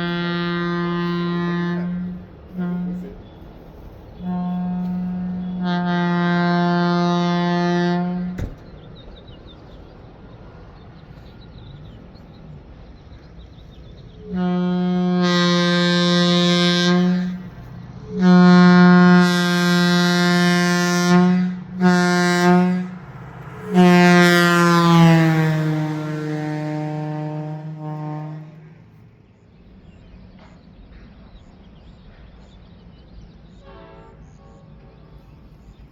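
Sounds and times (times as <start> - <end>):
locomotive air horn blasts: 0.0 - 8.5, 14.2 - 29.0, 33.5 - 35.6.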